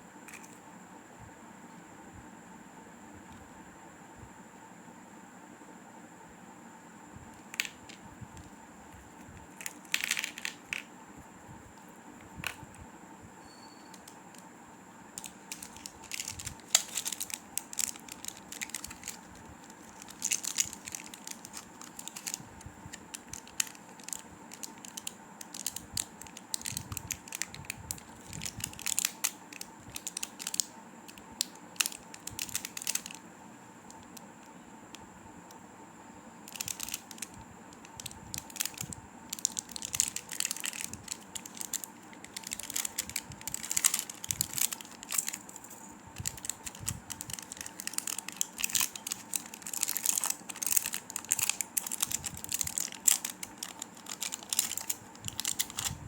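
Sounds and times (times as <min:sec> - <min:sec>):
plastic wrappers crinkling and tearing: 0:09.6 - 0:10.9, 0:15.2 - 0:33.2, 0:36.4 - 0:56.0.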